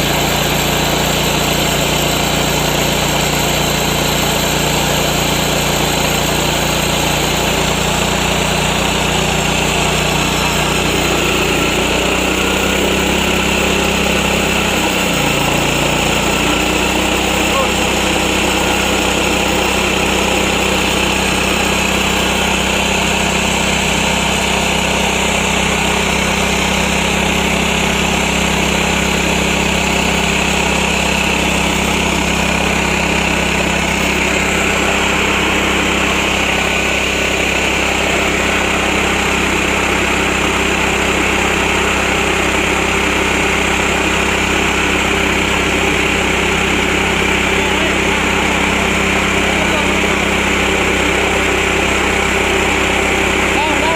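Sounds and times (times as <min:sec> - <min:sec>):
small engine drone: 0:00.0 - 0:53.9.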